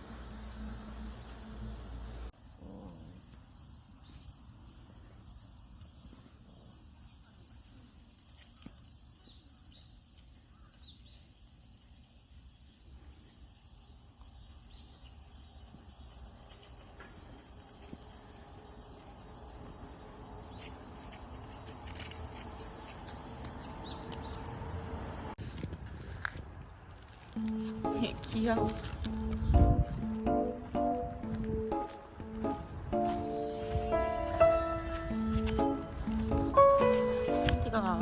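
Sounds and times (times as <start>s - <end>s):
crickets chirring: 26.8s - 38.0s.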